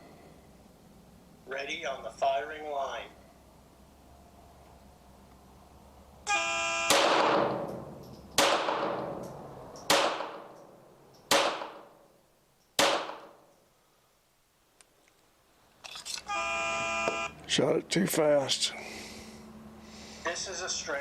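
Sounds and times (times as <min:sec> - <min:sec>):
pistol shots: 0:06.9 - 0:09.2, 0:09.8 - 0:10.6, 0:11.3 - 0:12.0, 0:12.8 - 0:13.5.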